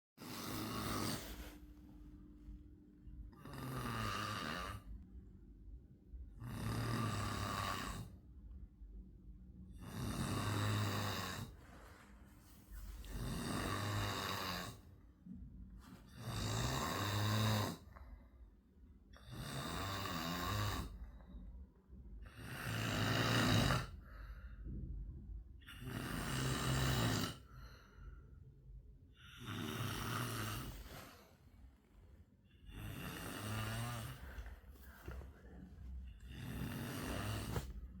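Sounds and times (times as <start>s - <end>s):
person snoring: 0.2s - 1.6s, 3.3s - 5.0s, 6.4s - 8.1s, 9.7s - 11.6s, 12.9s - 14.9s, 16.1s - 17.9s, 19.2s - 21.0s, 22.2s - 24.1s, 25.6s - 27.8s, 29.2s - 31.3s, 32.5s - 38.0s
quiet breathing: 0.2s - 38.0s.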